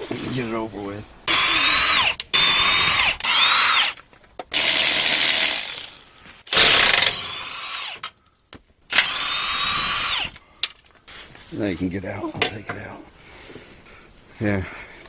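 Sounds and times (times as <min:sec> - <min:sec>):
cordless power driver whine: 0:08.9 - 0:10.4.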